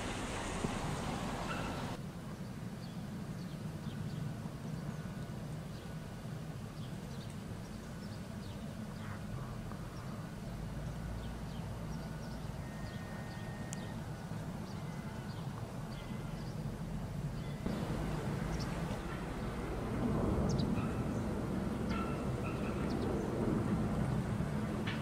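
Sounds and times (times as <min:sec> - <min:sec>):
thin whistle: 0:12.6 - 0:14.0
low rumble: 0:17.7 - 0:24.9.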